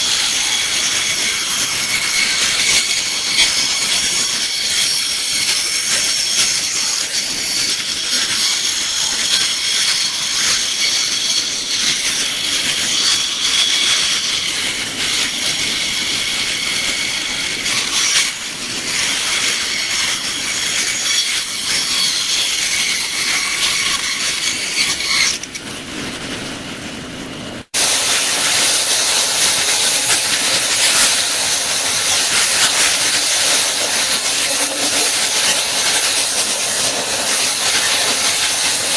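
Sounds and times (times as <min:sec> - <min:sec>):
power tool grinding with high whine: 0:00.0 - 0:26.4, 0:27.6 - 0:38.9
even hiss: 0:27.8 - 0:38.9.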